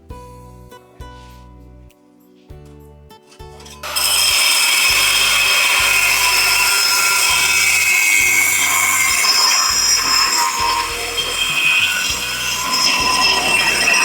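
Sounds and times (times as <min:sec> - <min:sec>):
background music with a beat: 0:00.0 - 0:14.0
angle grinder on metal: 0:03.8 - 0:14.0.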